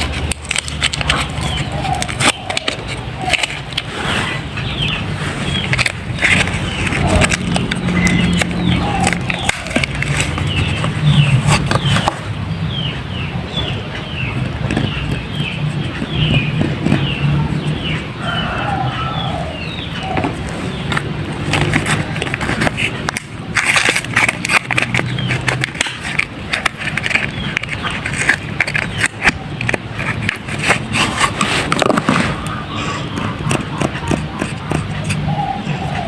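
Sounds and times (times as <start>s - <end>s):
birds chirping: 0.0s - 36.0s.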